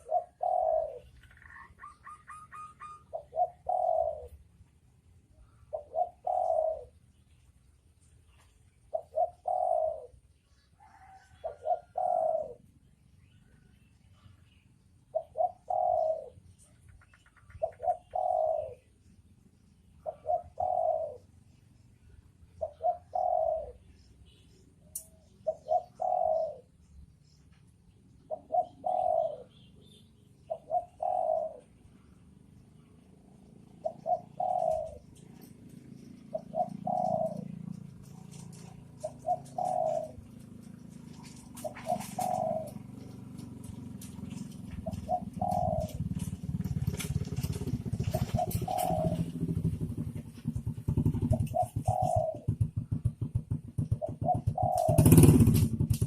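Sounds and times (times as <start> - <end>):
dove cooing: 0.0 - 7.2, 8.2 - 19.3, 19.9 - 24.2, 24.9 - 27.0, 28.2 - 56.0.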